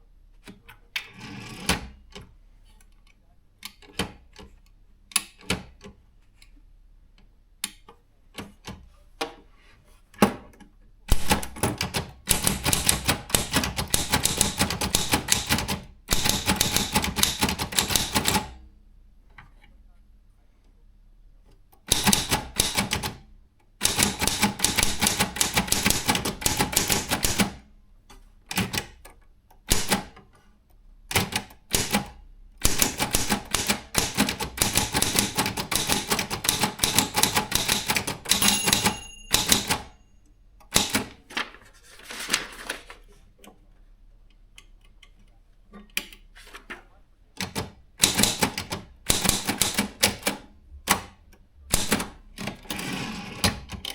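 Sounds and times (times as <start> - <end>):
typewriter key strikes: 11.1 - 18.6, 21.8 - 23.2, 23.8 - 27.6, 29.7 - 30.2, 31.1 - 40.0, 40.7 - 41.2, 47.4 - 51.1, 51.7 - 52.8
typewriter bell ring: 37.6 - 40.3.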